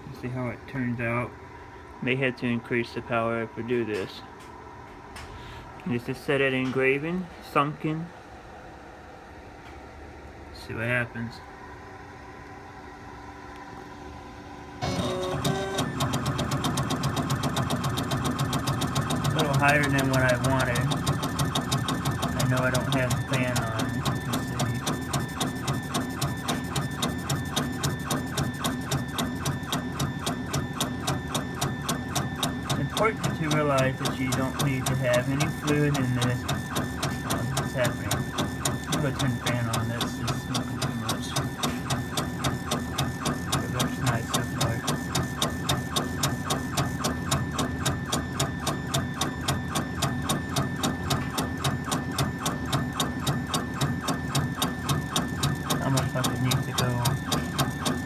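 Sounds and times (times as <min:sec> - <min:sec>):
laser engraver motor whine: 0:14.7 - 0:58.0.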